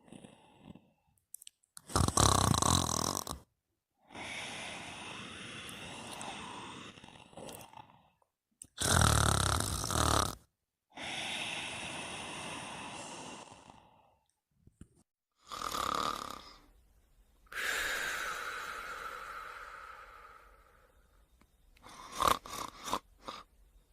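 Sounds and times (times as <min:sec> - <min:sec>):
person snoring: 0:00.0 - 0:01.0, 0:01.8 - 0:14.3, 0:15.4 - 0:16.7, 0:17.5 - 0:21.2, 0:21.8 - 0:23.5
slow breaths: 0:04.0 - 0:08.3, 0:10.9 - 0:14.3, 0:17.5 - 0:22.2.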